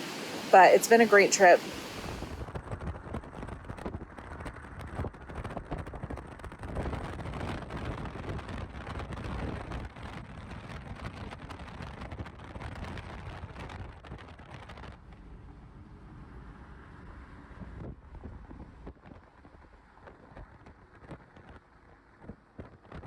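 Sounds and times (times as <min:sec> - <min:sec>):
ocean surf washing on beach: 0:00.0 - 0:02.5
wind buffeting microphone: 0:00.0 - 0:21.6.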